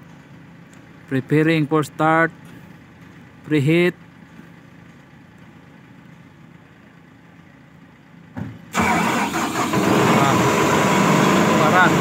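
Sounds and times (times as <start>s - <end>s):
diesel engine running loudly: 2.2s - 12.0s
engine starter cranking: 8.7s - 12.0s.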